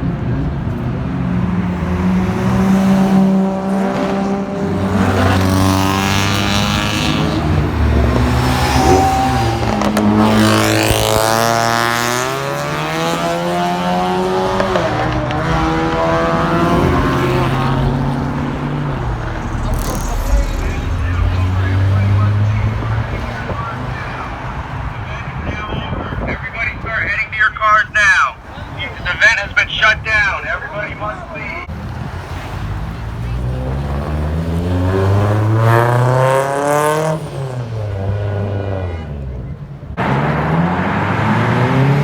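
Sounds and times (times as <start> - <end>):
car engine revving hard: 0.9 - 25.1, 31.7 - 39.2, 39.9 - 42.0.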